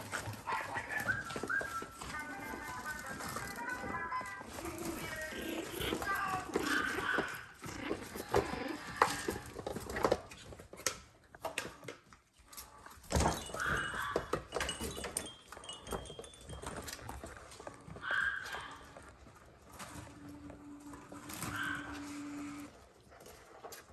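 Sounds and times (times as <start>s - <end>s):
puppies whining and yipping: 0.0s - 10.6s, 12.5s - 23.9s
puzzle toy clicks and knocks: 13.1s - 17.9s.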